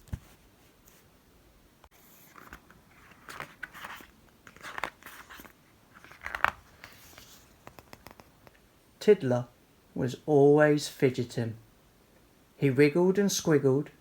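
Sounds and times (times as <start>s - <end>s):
paper rustling and crinkling: 1.9s - 8.5s.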